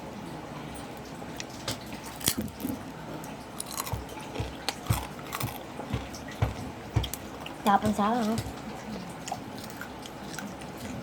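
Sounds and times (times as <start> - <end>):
person chewing crunchy food: 2.0 - 2.8, 3.6 - 7.6, 9.2 - 11.0.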